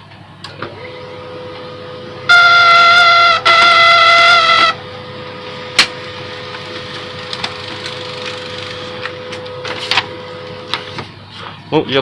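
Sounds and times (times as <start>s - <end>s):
laser printer whirring: 0.5s - 11.3s
printer clicks: 5.7s - 11.1s.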